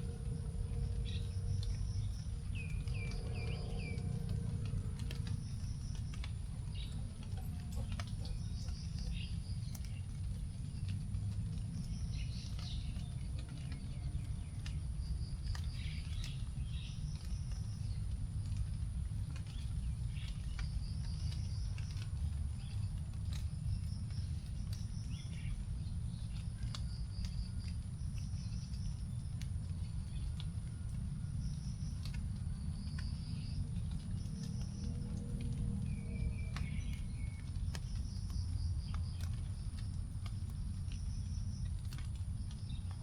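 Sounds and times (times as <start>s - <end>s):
insect drone: 0.0s - 6.3s
birds chirping: 0.0s - 10.9s
low background rumble: 0.0s - 43.0s
raindrops dripping onto leaves: 0.0s - 43.0s.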